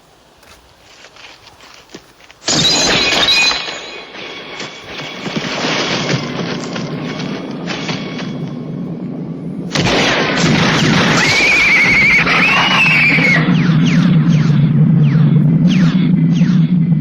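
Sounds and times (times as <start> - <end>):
loud crash with clattering: 2.5 - 8.7, 9.7 - 16.2.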